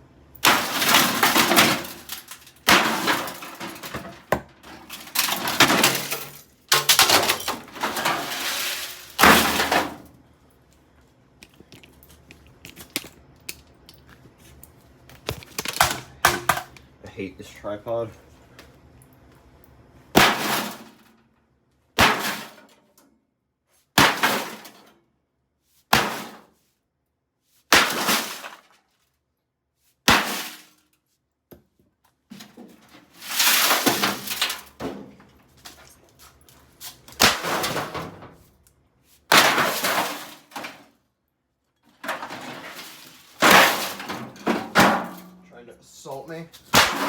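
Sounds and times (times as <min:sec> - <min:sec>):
casing crashing and rattling: 0:00.4 - 0:10.0, 0:33.0 - 0:35.0, 0:37.2 - 0:38.2, 0:42.0 - 0:45.4, 0:46.7 - 0:47.0
sledgehammer striking microwave: 0:20.1 - 0:20.8, 0:22.0 - 0:22.6, 0:24.0 - 0:24.6, 0:37.2 - 0:38.2, 0:46.7 - 0:47.0.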